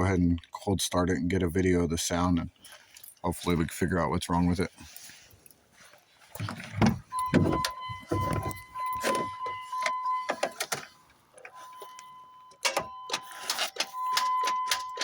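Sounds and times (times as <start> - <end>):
high electronic warning tone: 7.1 - 10.6, 11.5 - 15.0
keys jangling in ignition: 7.2 - 15.0.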